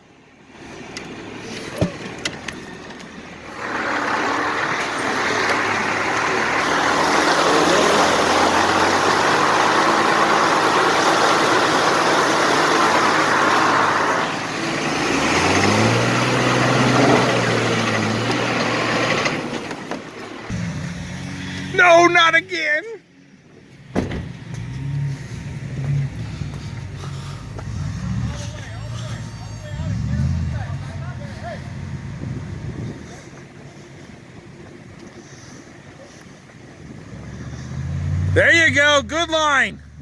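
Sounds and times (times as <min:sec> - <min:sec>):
vehicle engine revving: 0:00.6 - 0:22.6, 0:24.2 - 0:40.0
rush of churned water: 0:03.5 - 0:14.2.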